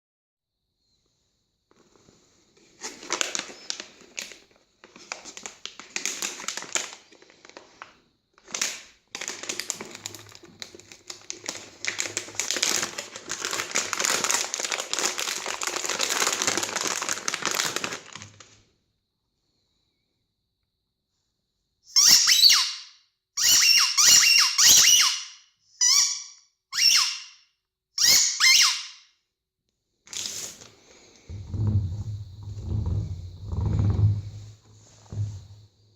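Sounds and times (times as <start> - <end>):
crinkling handling noise: 1.7 - 18.6, 30.0 - 35.6.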